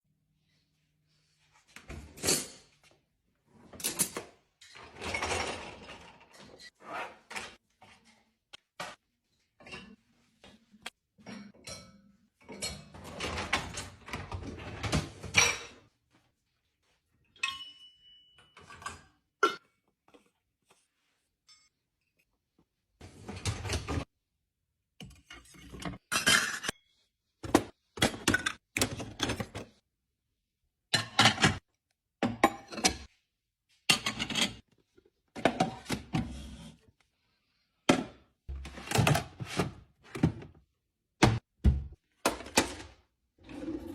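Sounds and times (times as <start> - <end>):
kitchenware rattling: 25.4 - 26.7
dishes clinking and clattering: 25.4 - 26.8.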